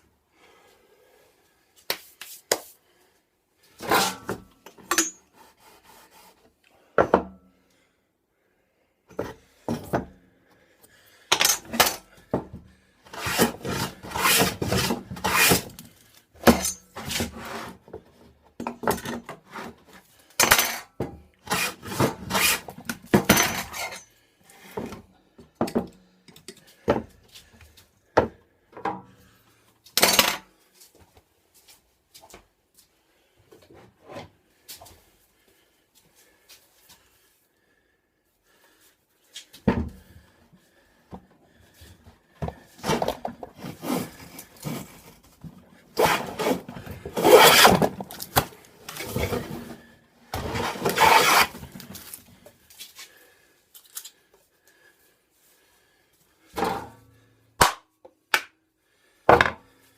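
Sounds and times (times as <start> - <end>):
hand tool scraping wood: 3.8 - 4.5, 5.2 - 6.5, 13.1 - 18.0, 21.4 - 24.1, 42.4 - 52.2.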